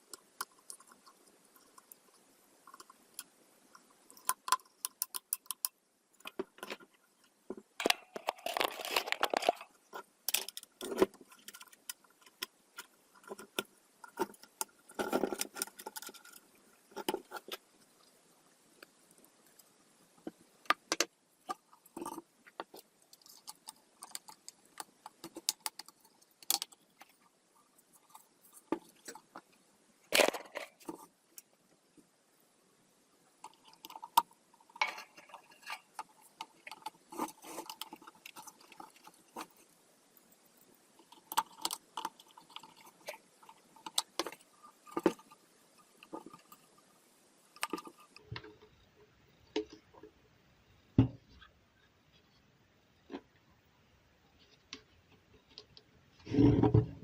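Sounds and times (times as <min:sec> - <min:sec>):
small hard parts clicking: 0:00.0 - 0:31.5, 0:33.3 - 0:48.8.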